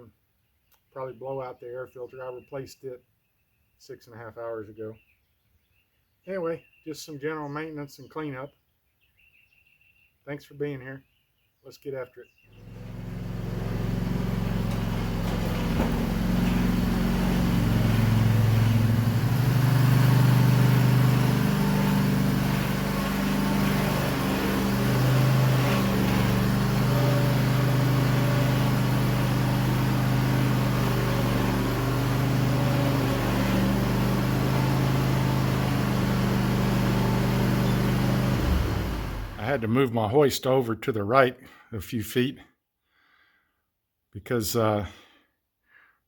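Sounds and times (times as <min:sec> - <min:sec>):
lawn mower engine running: 0:12.6 - 0:39.6.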